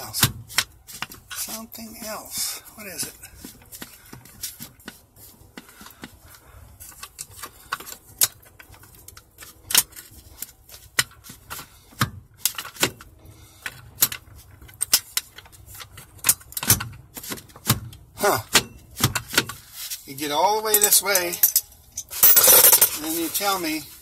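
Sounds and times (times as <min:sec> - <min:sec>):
metallic clicks and clinks: 0:20.6 - 0:23.1.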